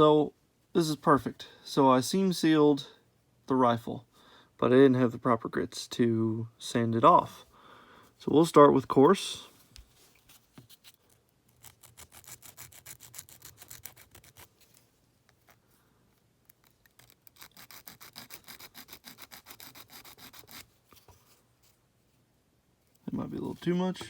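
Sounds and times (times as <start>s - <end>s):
sanding stick rubbing plastic: 11.7s - 14.5s, 17.0s - 20.7s.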